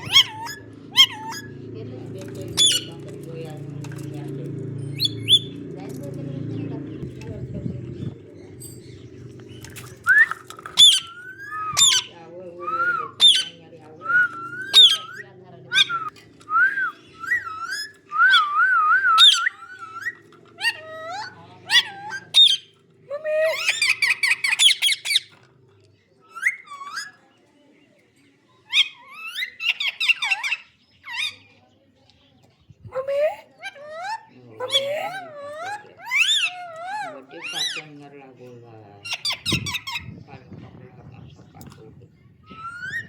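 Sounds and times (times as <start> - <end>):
parrot screeching and whistling: 0.0 - 1.6, 4.9 - 5.6, 10.0 - 22.8, 23.5 - 25.4, 26.2 - 27.2, 28.7 - 31.5, 33.6 - 37.9, 39.0 - 40.2, 42.4 - 43.0
parrot chattering: 0.0 - 1.8, 2.5 - 3.1, 4.4 - 5.7, 8.4 - 16.1, 17.0 - 22.8, 23.5 - 25.4, 33.0 - 38.0, 39.0 - 40.2.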